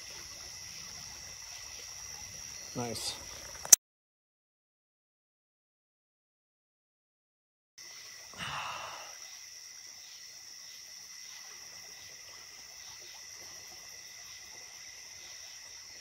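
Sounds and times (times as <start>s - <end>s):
night insects trilling: 0.0s - 3.8s, 7.8s - 16.0s.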